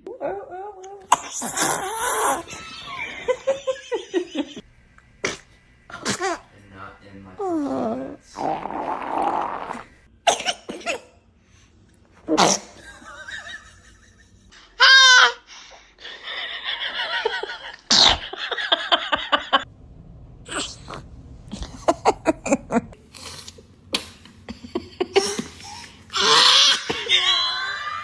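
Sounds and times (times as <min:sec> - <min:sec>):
high-pitched baby vocal sounds: 0:00.0 - 0:02.6
baby sneezing: 0:05.2 - 0:06.4, 0:10.3 - 0:11.1, 0:12.3 - 0:12.8.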